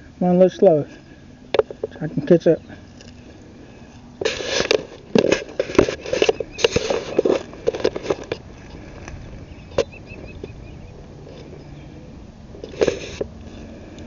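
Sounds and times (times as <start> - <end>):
hurried footsteps crunching: 0.8 - 11.6.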